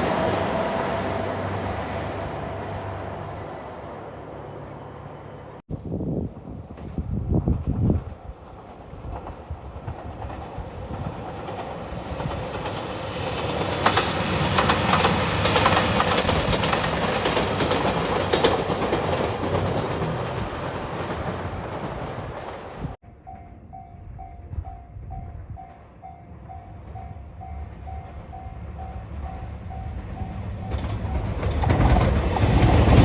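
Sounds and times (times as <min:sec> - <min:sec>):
diesel train passing: 0:00.0 - 0:33.0
wheels clicking over rail joints: 0:06.5 - 0:22.9, 0:26.8 - 0:33.0.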